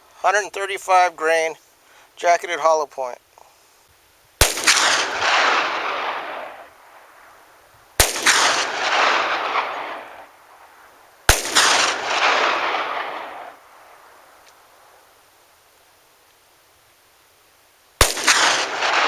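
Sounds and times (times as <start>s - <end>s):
pistol shots with echo: 4.4s - 6.7s, 8.0s - 10.3s, 11.3s - 13.6s, 18.0s - 19.0s.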